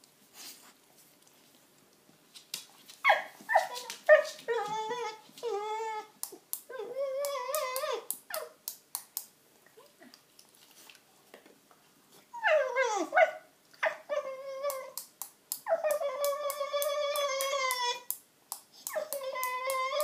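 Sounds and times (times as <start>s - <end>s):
dog whining: 3.0s - 8.6s, 12.3s - 15.0s, 15.6s - 18.2s, 18.9s - 20.0s.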